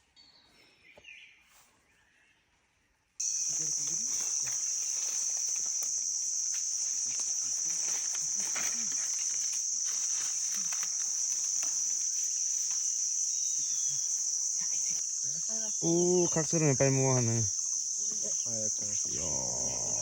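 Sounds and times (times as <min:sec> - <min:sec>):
insects shrilling: 0:03.2 - 0:20.0
faint rustles: 0:06.6 - 0:12.9.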